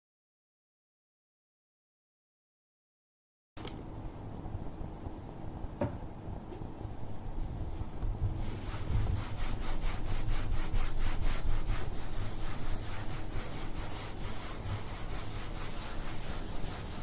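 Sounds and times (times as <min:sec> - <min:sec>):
rubbing kitchen surface: 0:07.3 - 0:17.0.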